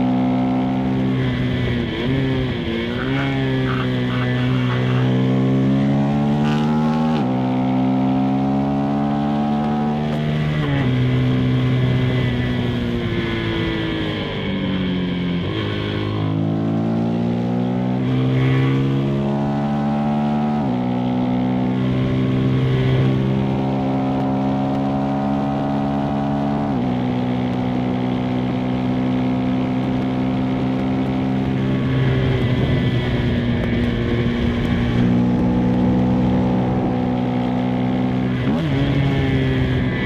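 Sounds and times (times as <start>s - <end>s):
motorcycle engine accelerating: 0.0s - 40.0s
wind and road noise: 0.0s - 40.0s.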